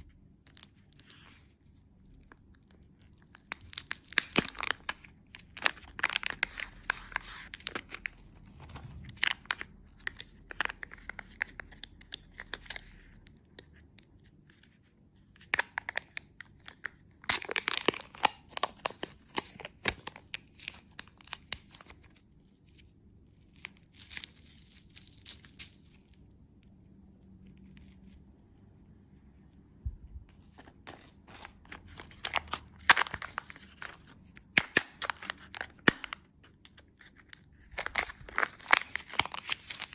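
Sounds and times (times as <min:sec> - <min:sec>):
wrapper packaging crinkling: 0:00.0 - 0:13.3, 0:15.3 - 0:26.4, 0:30.4 - 0:39.9.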